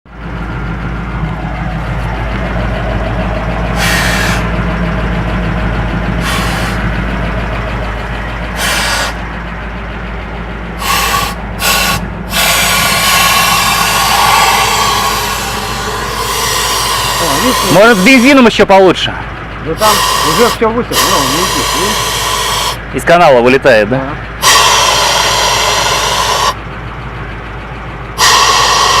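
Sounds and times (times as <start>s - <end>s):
truck engine idling: 0.1s - 29.0s
compressed air blasts from nozzle: 10.8s - 18.0s, 19.8s - 22.8s, 24.4s - 26.6s, 28.2s - 29.0s.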